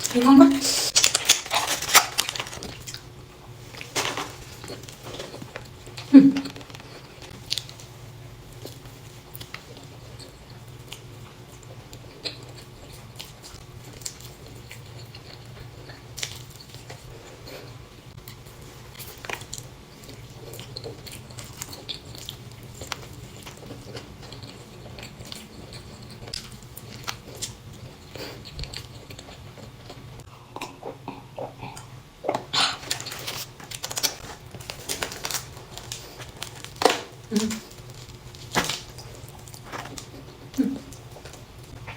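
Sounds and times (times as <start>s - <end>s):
person biting and chewing: 0.7s - 3.1s.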